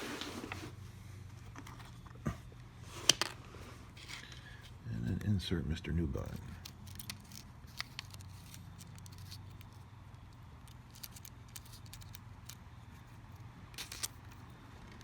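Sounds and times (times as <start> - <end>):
low steady hum: 0.0 - 15.0
small parts clicking and tapping: 6.2 - 15.0.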